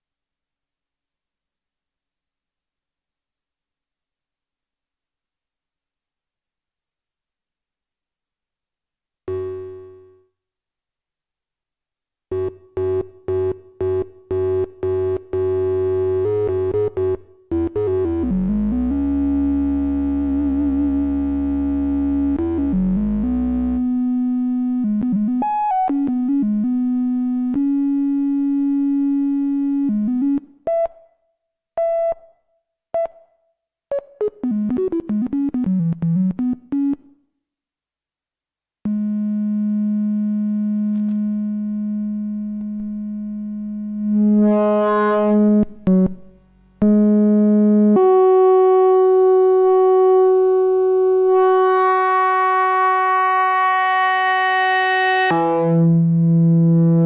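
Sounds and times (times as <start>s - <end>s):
analogue synthesizer notes: 12.3s - 30.5s, 33.9s - 37.1s, 38.9s - 57.0s.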